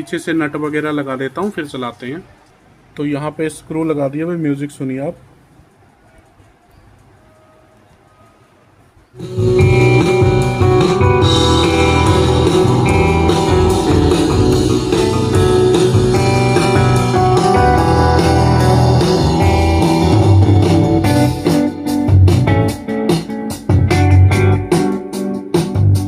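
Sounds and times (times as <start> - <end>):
guitar-led music through speaker: 9.2 - 26.0.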